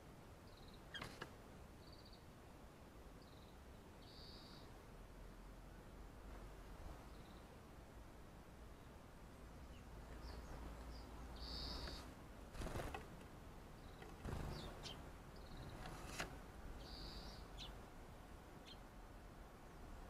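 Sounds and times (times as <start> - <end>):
buzzy bird calls: 10.2 - 13.0, 13.8 - 16.2, 16.8 - 17.8
birds giving short high calls: 10.9 - 12.1, 13.9 - 16.2, 16.8 - 17.8.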